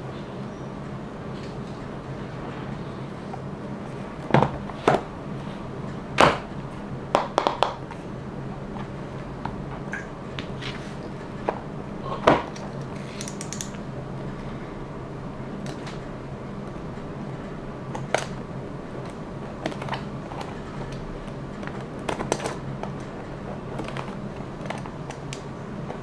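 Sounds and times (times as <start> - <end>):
steady low hum: 0.0 - 26.0
plastic items clicking on table: 12.3 - 13.8.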